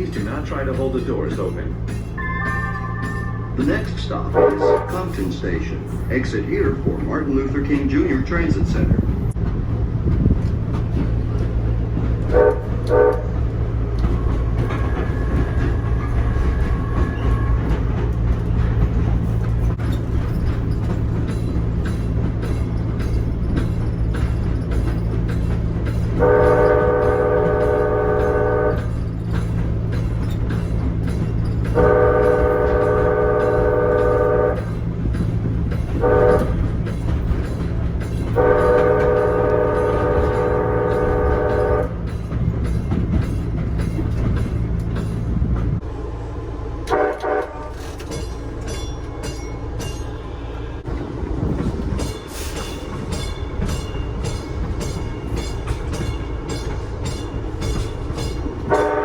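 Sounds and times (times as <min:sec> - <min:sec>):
hum of moving rail car: 0:00.0 - 0:59.0
light rail horn: 0:04.3 - 0:05.3, 0:12.2 - 0:18.0, 0:26.0 - 0:29.1, 0:31.7 - 0:34.9, 0:35.9 - 0:36.9, 0:38.3 - 0:42.2, 0:46.8 - 0:48.0, 0:58.6 - 0:59.0.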